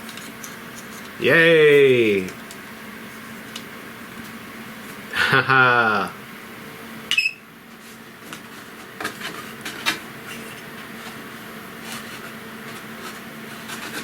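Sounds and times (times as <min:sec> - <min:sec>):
steady low hum: 0:00.0 - 0:08.3.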